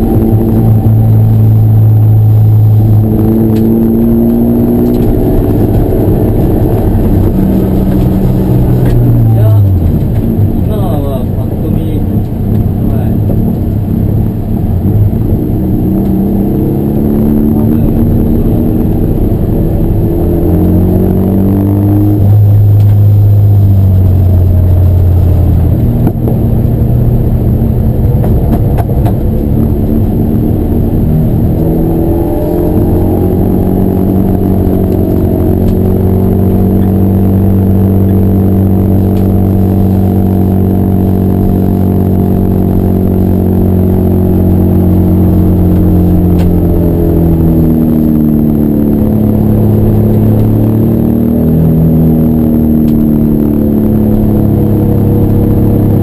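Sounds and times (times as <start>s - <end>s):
race car engine revving: 0.0s - 56.0s.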